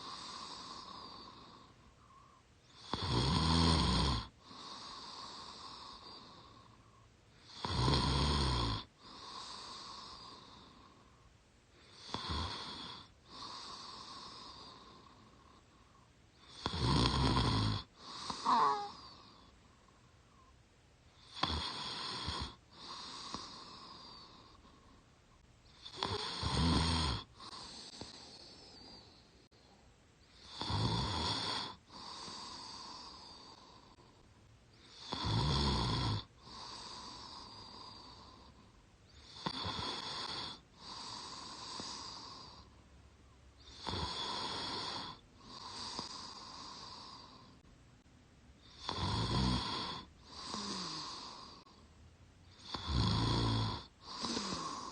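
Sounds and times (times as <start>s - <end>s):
woman snoring: 0.0s - 1.8s, 2.7s - 6.8s, 7.4s - 11.1s, 11.8s - 15.4s, 16.4s - 19.5s, 21.2s - 24.7s, 25.7s - 29.3s, 30.3s - 34.1s, 34.8s - 42.7s, 43.6s - 47.6s, 48.6s - 51.8s, 52.5s - 54.9s
quiet breath: 0.0s - 3.0s, 4.2s - 7.7s, 8.5s - 16.7s, 17.4s - 26.3s, 27.1s - 30.7s, 31.3s - 35.2s, 36.2s - 48.9s, 49.6s - 54.9s.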